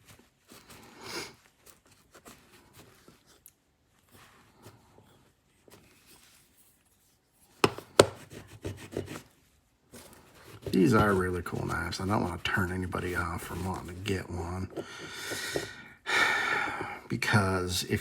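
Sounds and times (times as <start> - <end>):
faint clicks and rustles: 0.0 - 7.6.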